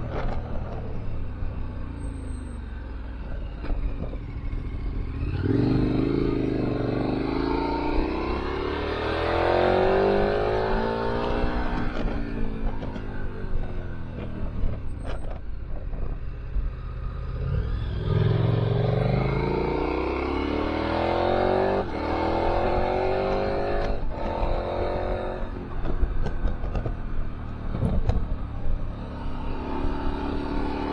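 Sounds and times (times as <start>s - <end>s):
wind rumble on microphone: 9.0s - 19.7s, 20.6s - 30.9s.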